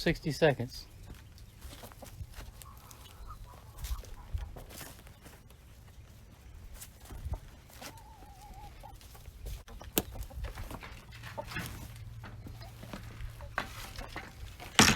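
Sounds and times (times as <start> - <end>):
chickens clucking: 0.0 - 14.9
chicken trilled call: 1.6 - 5.0, 7.1 - 9.3
sharp clicks and knocks: 9.8 - 14.9.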